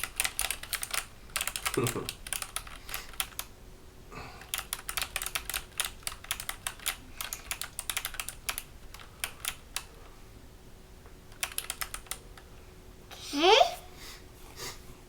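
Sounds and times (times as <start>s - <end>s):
clicky mechanical keyboard typing: 0.0s - 3.5s, 4.4s - 9.9s, 11.3s - 12.5s.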